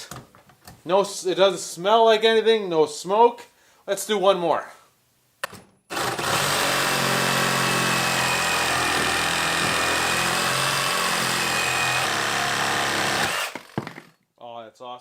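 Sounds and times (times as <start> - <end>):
reciprocating saw whining: 5.9 - 13.8.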